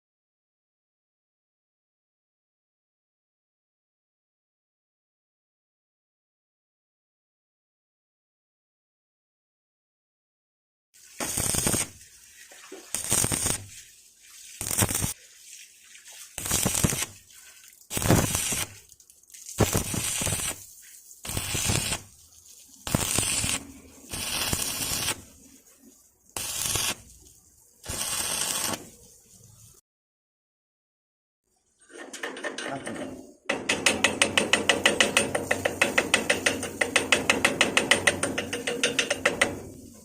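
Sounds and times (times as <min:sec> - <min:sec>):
welding arc crackling and hissing: 0:11.1 - 0:12.0, 0:12.9 - 0:13.8, 0:14.6 - 0:15.2, 0:16.4 - 0:17.2, 0:17.9 - 0:18.9, 0:19.6 - 0:22.2, 0:22.8 - 0:25.4, 0:26.3 - 0:27.1, 0:27.8 - 0:29.0.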